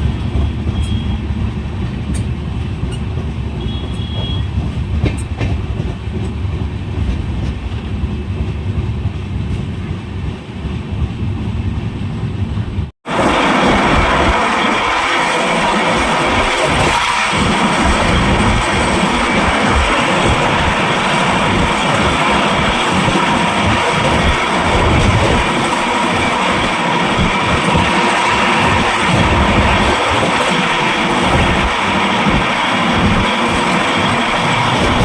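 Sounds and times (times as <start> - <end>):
train rumbling on rails: 0.0 - 35.0
train wheel clicks: 0.1 - 8.1.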